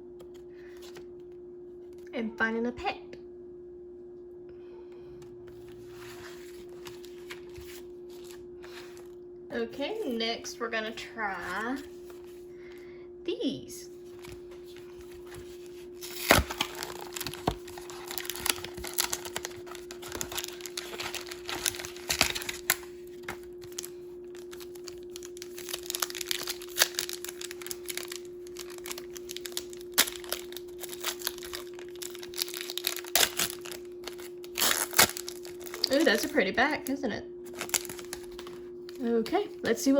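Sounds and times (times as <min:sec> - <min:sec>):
faint hum: 0:00.0 - 0:39.9
wrapper crinkling: 0:14.0 - 0:36.5, 0:37.5 - 0:39.2.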